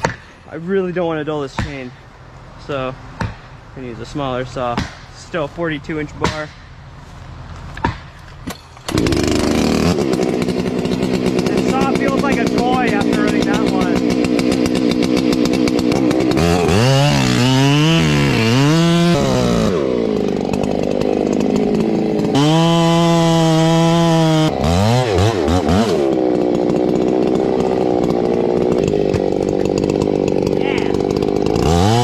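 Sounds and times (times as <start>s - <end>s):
chainsaw revving: 8.8s - 32.0s.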